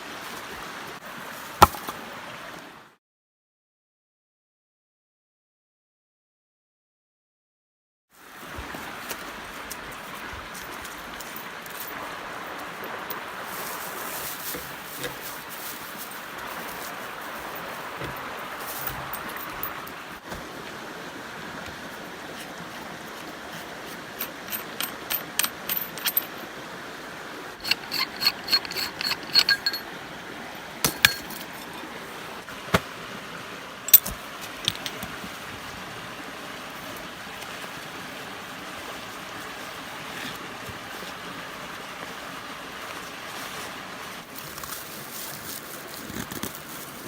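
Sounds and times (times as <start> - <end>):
steady hiss: 8.2 - 47.0
sharp ringing taps: 27.6 - 29.8, 30.9 - 31.3.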